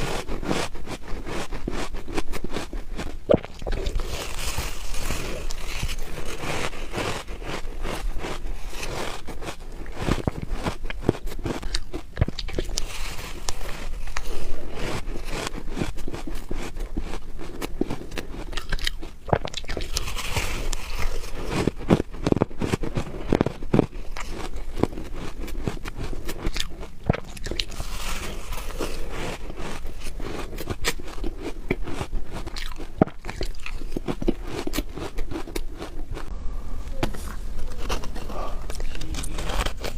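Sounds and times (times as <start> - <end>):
biting crunchy ice: 0.0 - 36.3.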